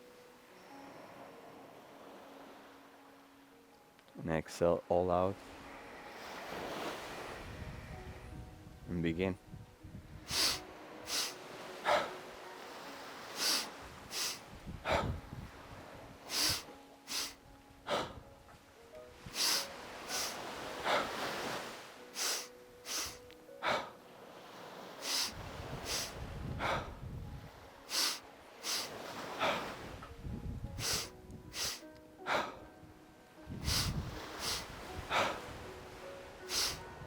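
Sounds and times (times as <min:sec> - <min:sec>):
soft background music: 0:00.0 - 0:37.0
person breathing rhythmically: 0:10.2 - 0:32.8, 0:33.5 - 0:37.0.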